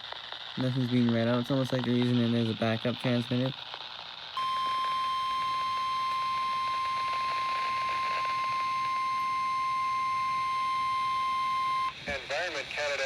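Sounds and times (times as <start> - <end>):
faint receiver static: 0.4 - 13.0
steady high alarm beep: 4.4 - 12.0.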